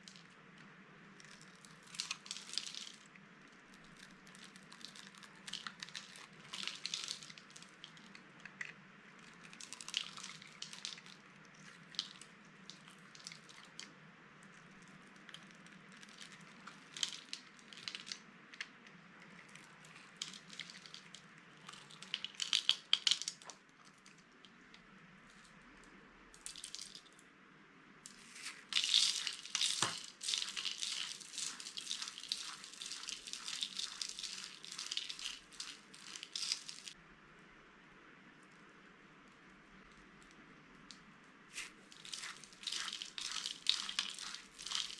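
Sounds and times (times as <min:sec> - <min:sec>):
dry soap crunching: 0:01.1 - 0:13.9, 0:14.8 - 0:24.2, 0:26.4 - 0:27.1, 0:28.1 - 0:37.0, 0:41.5 - 0:44.9.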